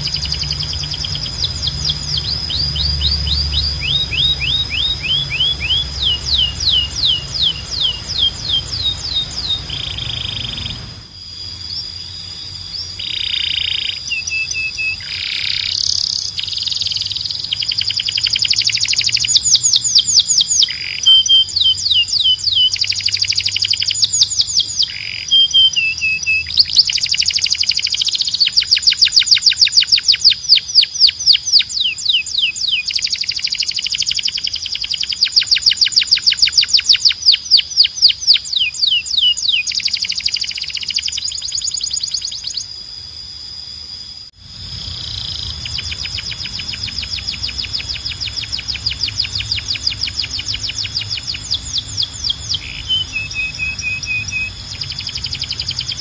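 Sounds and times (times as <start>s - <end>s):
canary singing: 0.0s - 42.9s, 44.1s - 56.0s
low background hum: 0.0s - 56.0s.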